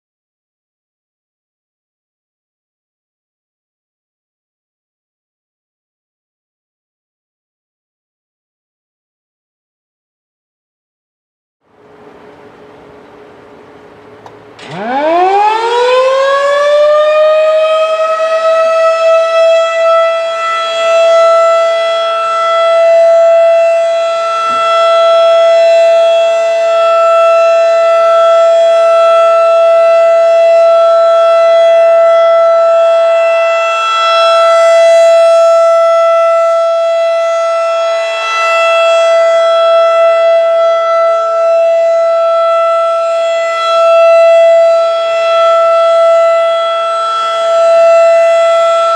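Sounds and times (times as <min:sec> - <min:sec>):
rotating warning siren: 0:11.8 - 0:48.9.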